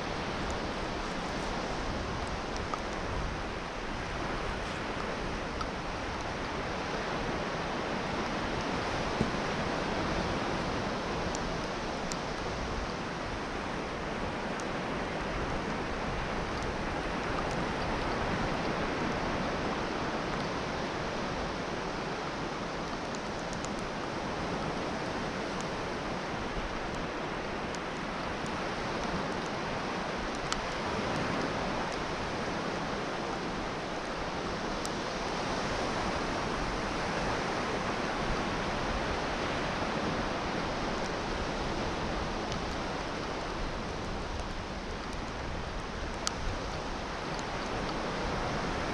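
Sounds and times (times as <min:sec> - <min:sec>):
sea surf on a beach: 0:00.0 - 0:48.9
faint ticks: 0:22.8 - 0:23.9, 0:42.0 - 0:48.4.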